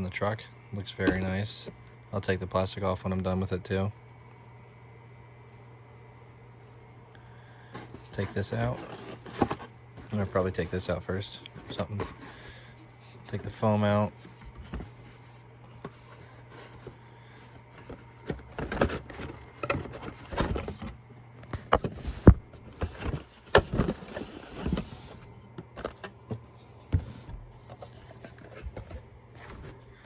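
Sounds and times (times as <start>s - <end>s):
low steady hum: 0.0s - 30.0s
packing foam and plastic rustling: 7.8s - 21.0s.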